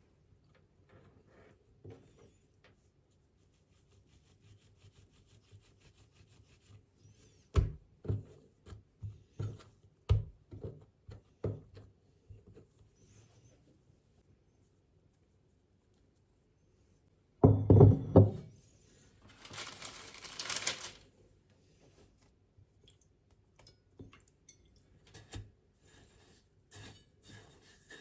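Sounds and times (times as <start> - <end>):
objects knocking and clunking: 17.4 - 18.5.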